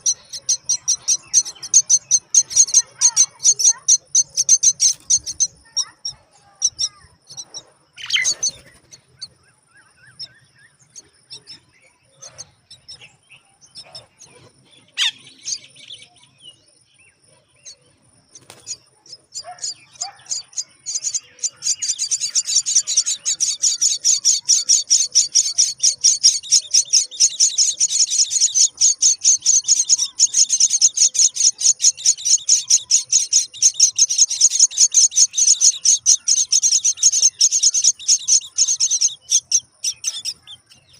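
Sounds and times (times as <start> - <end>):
nestlings chirping and clicking: 0.0 - 9.4, 17.6 - 40.9
nestlings begging chatter: 0.0 - 40.9.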